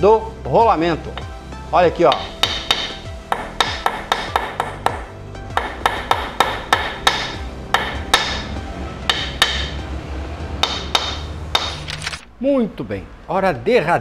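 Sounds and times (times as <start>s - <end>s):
background music: 0.0s - 14.0s
hammer striking metal: 2.0s - 9.8s, 10.6s - 11.9s.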